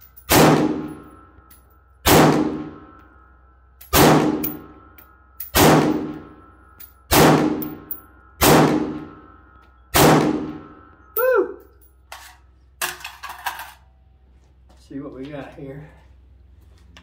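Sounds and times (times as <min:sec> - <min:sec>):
gunshots: 0:00.3 - 0:01.0, 0:02.0 - 0:02.8, 0:03.9 - 0:04.7, 0:05.6 - 0:06.3, 0:07.1 - 0:07.8, 0:08.4 - 0:09.2, 0:09.9 - 0:10.7.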